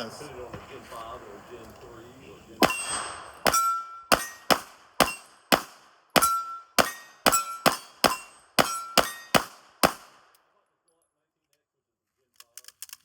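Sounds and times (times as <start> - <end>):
short metallic ring: 2.6 - 5.4, 6.2 - 9.4
pistol shots: 2.6 - 10.3.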